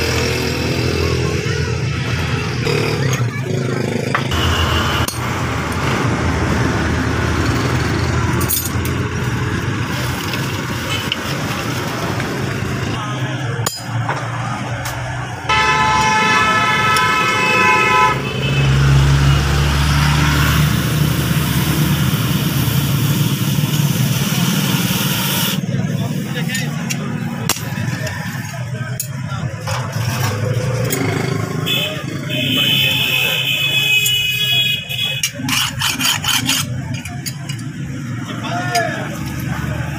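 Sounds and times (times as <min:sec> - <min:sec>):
road traffic noise: 0:00.0 - 0:39.9
vehicle horn blast: 0:04.3 - 0:05.1, 0:15.5 - 0:18.8.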